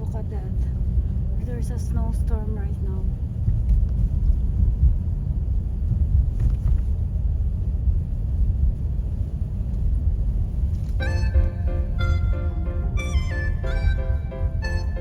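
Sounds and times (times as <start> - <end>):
car road and engine rumble: 0.0 - 15.0
background music: 11.0 - 15.0.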